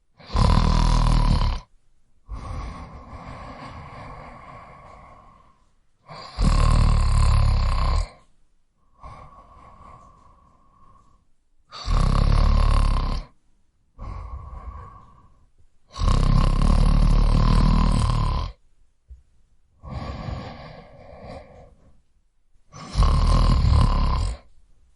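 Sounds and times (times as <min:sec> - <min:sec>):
person snoring heavily: 0:00.2 - 0:01.7, 0:02.3 - 0:13.4, 0:14.0 - 0:18.6, 0:19.8 - 0:21.9, 0:22.7 - 0:24.5.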